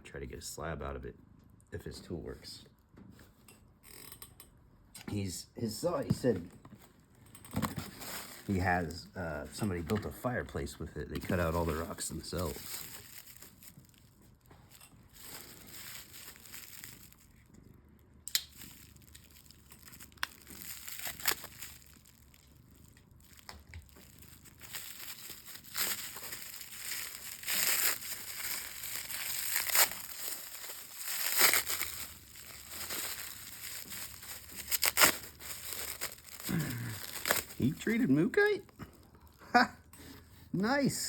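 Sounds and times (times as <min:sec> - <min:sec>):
packaging crinkling: 0:07.5 - 0:08.9, 0:11.2 - 0:38.2.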